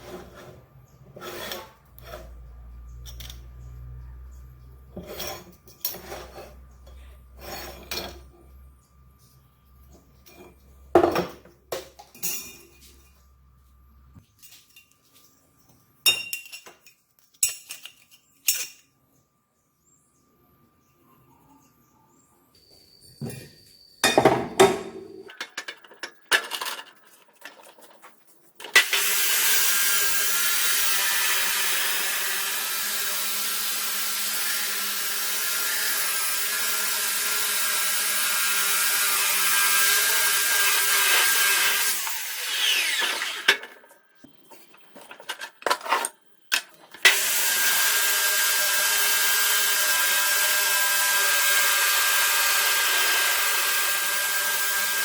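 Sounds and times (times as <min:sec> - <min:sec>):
electric drill motor running: 0:28.8 - 0:43.6, 0:47.1 - 0:55.0.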